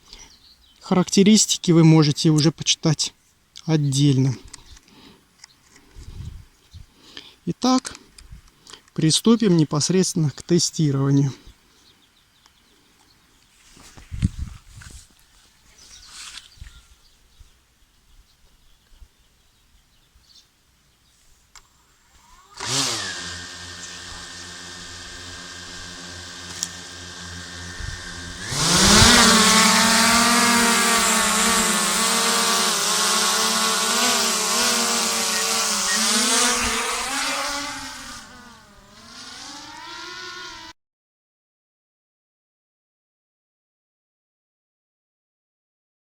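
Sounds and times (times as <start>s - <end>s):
drone propellers buzzing whine: 22.4s - 40.7s.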